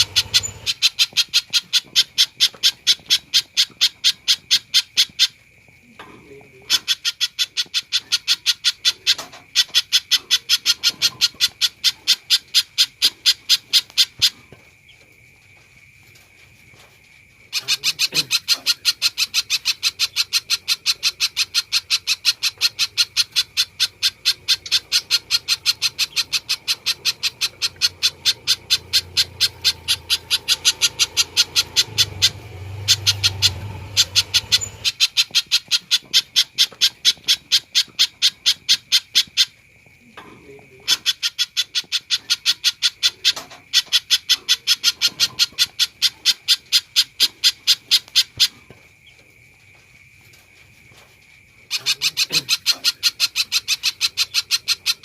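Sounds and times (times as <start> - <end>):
bird calling rapid sharp notes: 0.0 - 5.4, 17.6 - 39.5.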